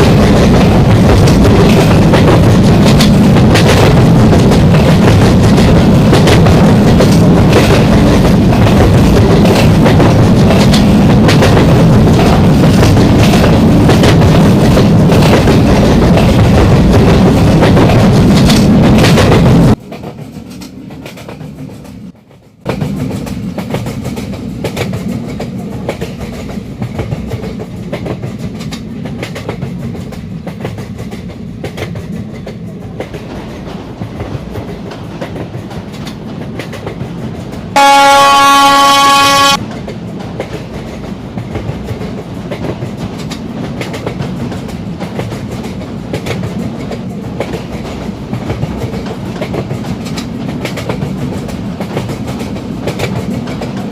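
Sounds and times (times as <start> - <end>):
train rumbling on rails: 0.0 - 53.9
locomotive horn blast: 37.8 - 39.6.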